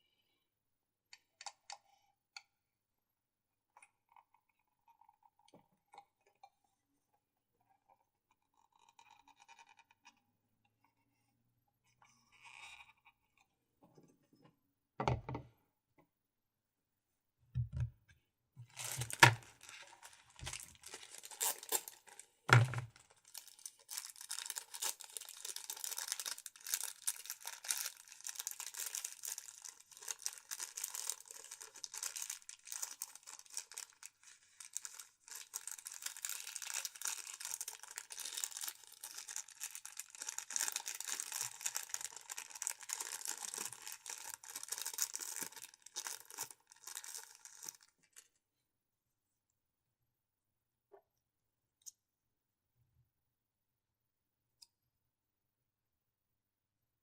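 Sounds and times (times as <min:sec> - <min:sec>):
packaging crinkling: 0:18.7 - 0:48.3.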